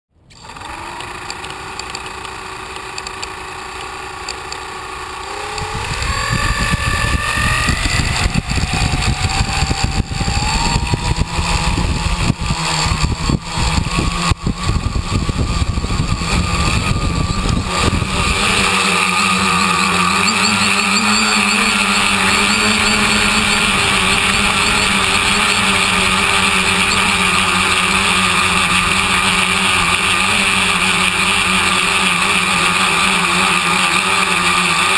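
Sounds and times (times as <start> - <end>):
drone motors and propellers whining: 0.2 - 34.9
gusty choppy noise: 5.6 - 31.9.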